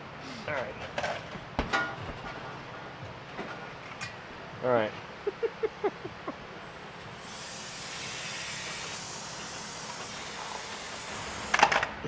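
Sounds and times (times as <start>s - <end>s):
compressed air hissing: 6.7s - 11.8s.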